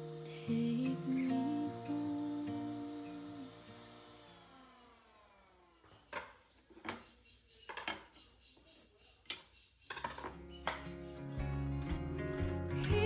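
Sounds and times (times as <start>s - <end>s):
background music: 10.9s - 13.0s.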